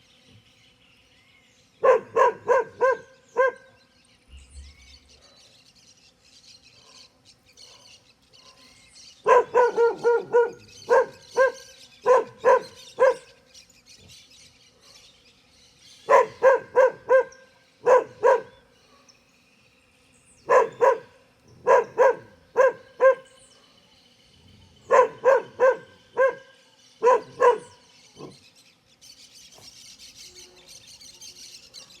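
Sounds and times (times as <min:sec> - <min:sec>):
dog barking sharply: 0:01.8 - 0:03.6, 0:09.3 - 0:13.2, 0:16.1 - 0:18.5, 0:20.5 - 0:23.3, 0:24.9 - 0:26.4, 0:27.0 - 0:27.8.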